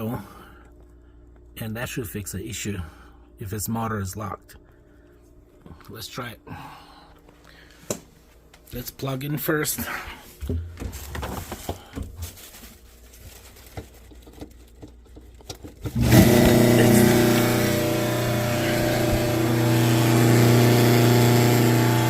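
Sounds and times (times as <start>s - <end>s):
garbage disposal motor humming: 9.8s - 22.0s.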